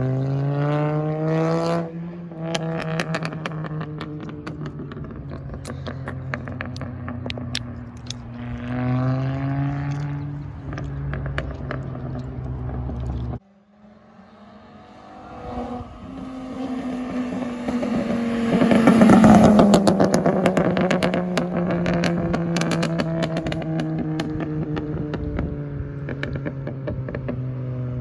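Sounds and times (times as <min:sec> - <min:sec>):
low engine drone: 0:02.3 - 0:13.4
exhaust pops and crackles: 0:02.4 - 0:13.4, 0:17.1 - 0:28.0
car passing by: 0:04.9 - 0:25.0.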